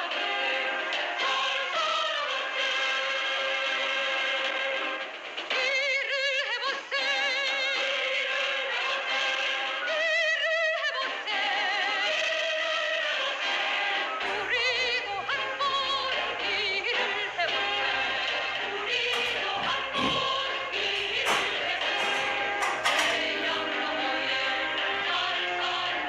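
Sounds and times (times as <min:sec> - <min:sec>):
person singing with vibrato: 0:14.2 - 0:26.0.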